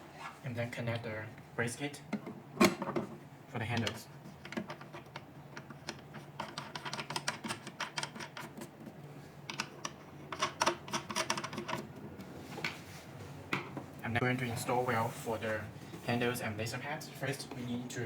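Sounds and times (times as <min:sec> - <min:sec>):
small parts clicking and tapping: 0:03.8 - 0:08.7, 0:09.5 - 0:11.9.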